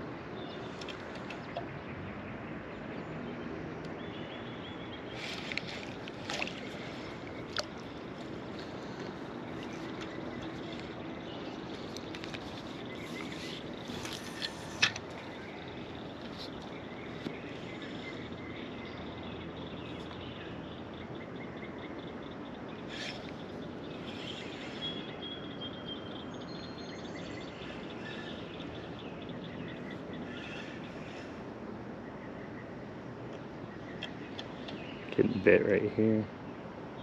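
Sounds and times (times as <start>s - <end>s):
bird chirps: 6.5s - 31.3s.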